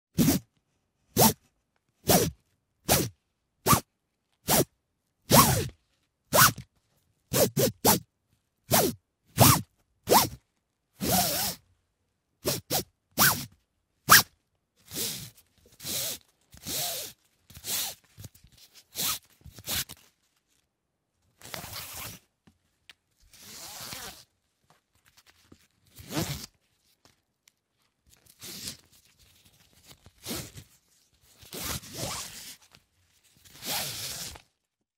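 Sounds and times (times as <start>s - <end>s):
strap strokes: 2.0s - 3.1s, 4.5s - 4.7s, 5.3s - 6.6s, 7.3s - 8.0s, 8.7s - 10.4s, 11.0s - 11.6s, 12.4s - 20.1s, 28.1s - 32.7s, 33.4s - 34.4s.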